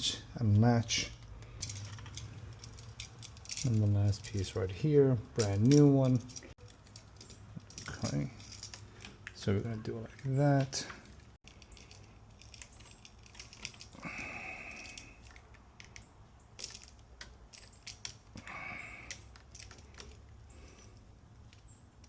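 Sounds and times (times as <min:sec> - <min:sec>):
clicks of wire and tools: 0:10.1 - 0:22.0.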